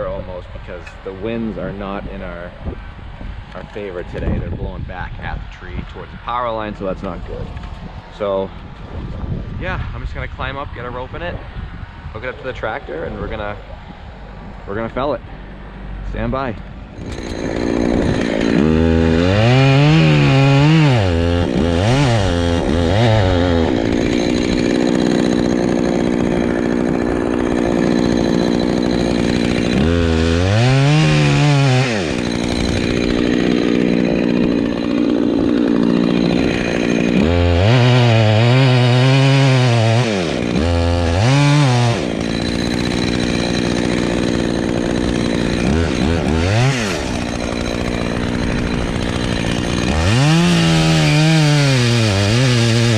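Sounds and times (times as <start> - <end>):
two-stroke chainsaw revving: 16.9 - 52.9.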